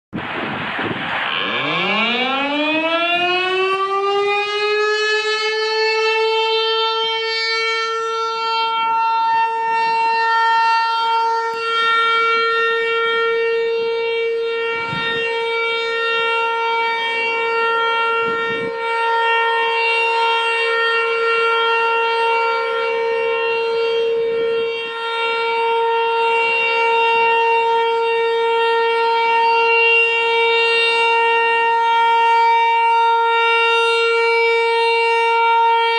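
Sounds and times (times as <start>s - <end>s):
electromechanical siren winding up: 1.0s - 6.2s.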